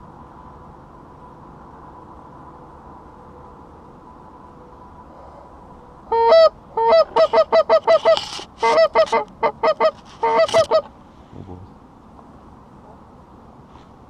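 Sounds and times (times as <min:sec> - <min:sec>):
goose honking: 0:06.1 - 0:10.9.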